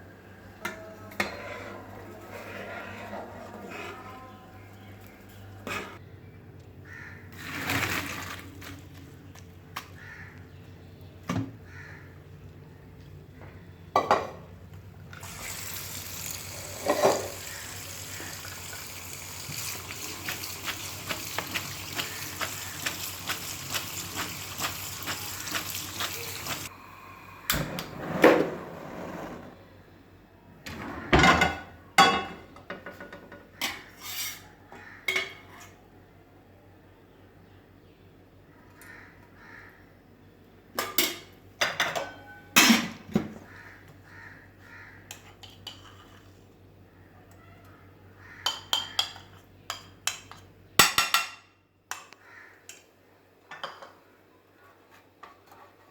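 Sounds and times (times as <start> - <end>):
utensils and dishes clinking: 16.6 - 17.5.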